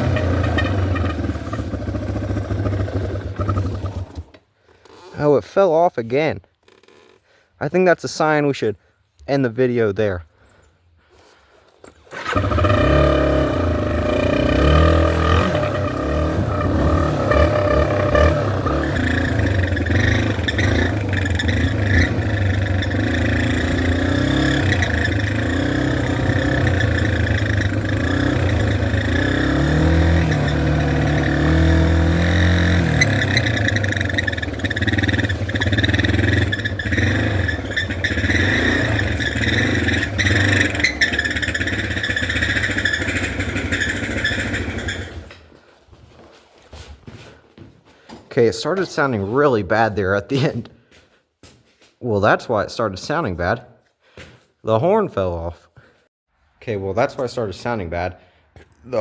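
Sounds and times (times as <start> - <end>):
dirt bike engine revving: 0.0 - 4.4, 12.0 - 45.4.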